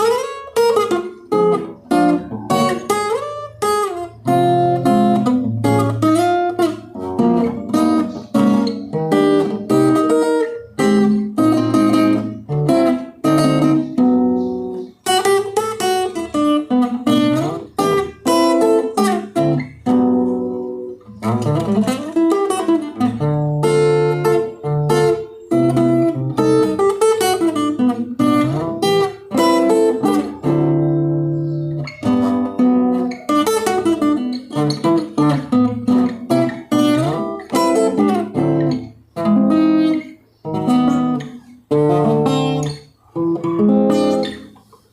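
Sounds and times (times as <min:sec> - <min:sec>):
acoustic guitar picking: 0:00.0 - 0:44.9.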